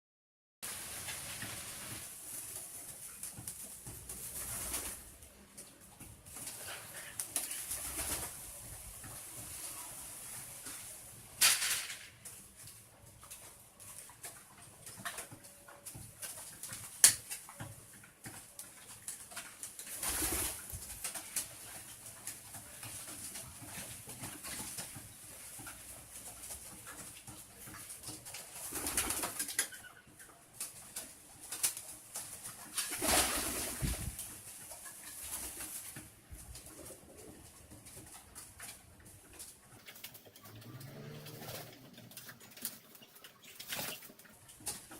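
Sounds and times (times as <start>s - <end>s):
rustling: 30.6s - 44.9s
pigeons cooing: 39.8s - 44.2s.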